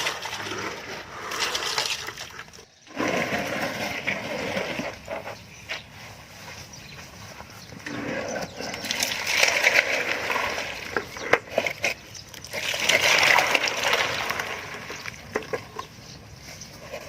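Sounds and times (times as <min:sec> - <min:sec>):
tool scraping wet concrete: 0:00.0 - 0:06.3, 0:07.0 - 0:17.0.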